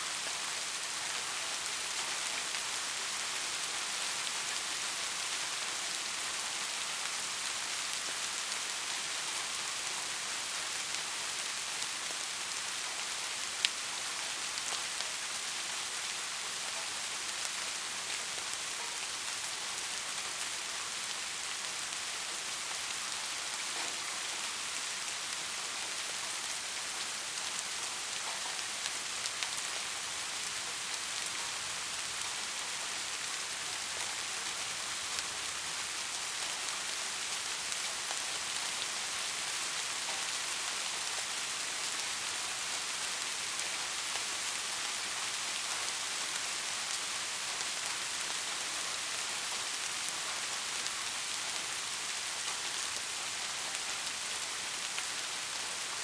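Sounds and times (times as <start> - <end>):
steady rain hiss: 0.0 - 56.0.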